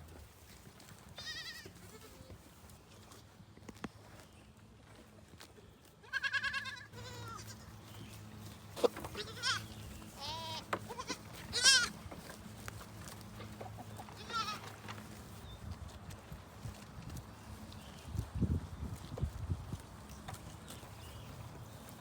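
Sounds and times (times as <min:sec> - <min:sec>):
goats bleating: 0:01.1 - 0:02.4, 0:06.0 - 0:07.9, 0:08.7 - 0:12.1, 0:13.3 - 0:14.9.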